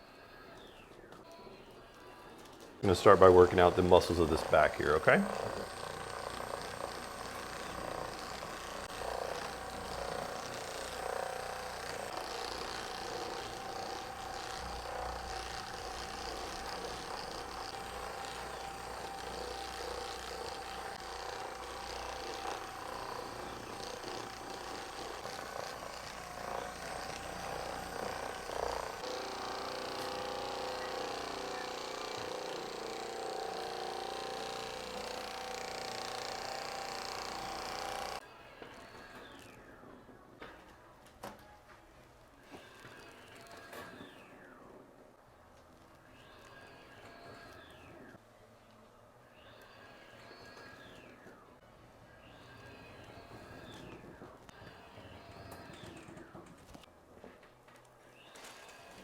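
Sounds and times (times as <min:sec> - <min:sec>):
small electric motor humming: 0:02.8 - 0:39.6, 0:46.1 - 0:48.1, 0:52.2 - 0:56.8.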